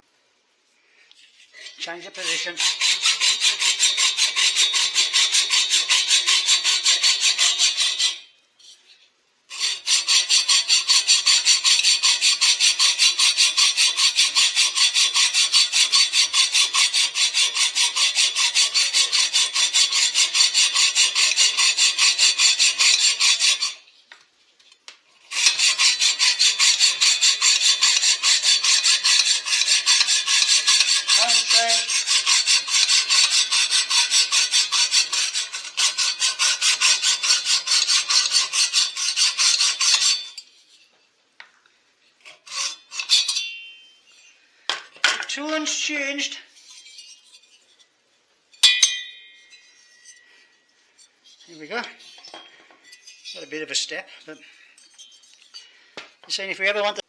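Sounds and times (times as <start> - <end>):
saw blade cutting metal: 1.6 - 8.3, 9.5 - 23.9, 25.2 - 40.8, 42.3 - 44.3.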